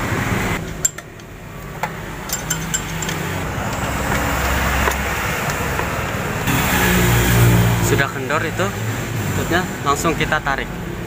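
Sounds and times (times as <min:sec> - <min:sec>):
engine humming: 0:00.0 - 0:11.0
metallic tool clinks: 0:02.2 - 0:03.8.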